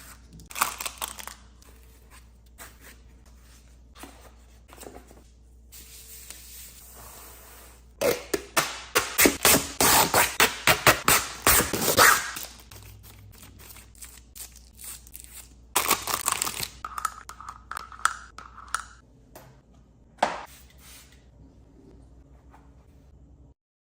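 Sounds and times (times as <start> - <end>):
plastic packaging crinkling and tearing: 0.0 - 1.6, 12.3 - 16.8.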